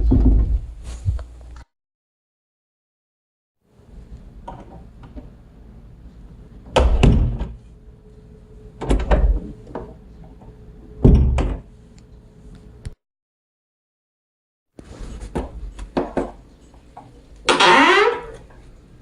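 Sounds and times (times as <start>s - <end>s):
door thudding: 6.8s - 7.6s.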